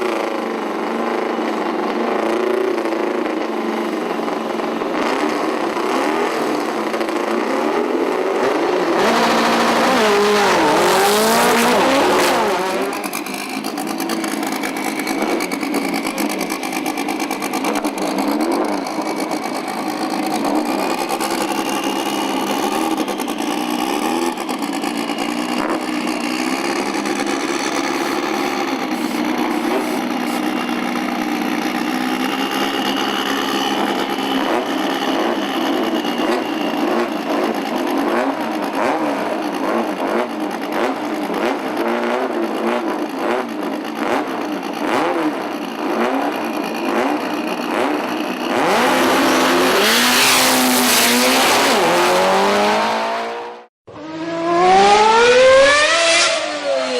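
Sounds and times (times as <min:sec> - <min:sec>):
car engines running: 0:00.0 - 0:56.9
car revved hard: 0:04.9 - 0:13.0, 0:26.6 - 0:30.8, 0:33.5 - 0:56.9.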